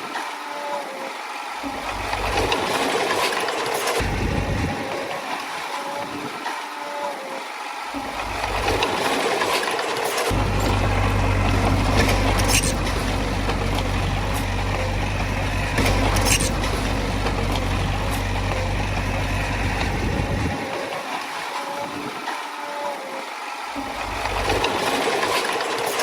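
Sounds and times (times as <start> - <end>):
diesel engine running: 8.0 - 20.9, 23.9 - 25.9
sharp metallic clanks: 10.3 - 18.7
deep low drone: 10.3 - 20.6.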